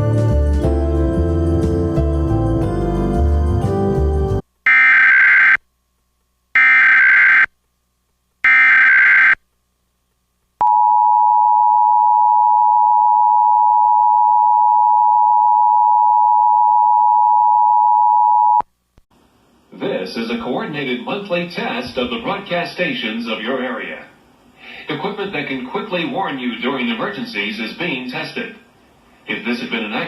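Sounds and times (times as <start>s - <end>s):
screeching digital data bursts: 6.6s - 7.5s, 8.5s - 9.4s.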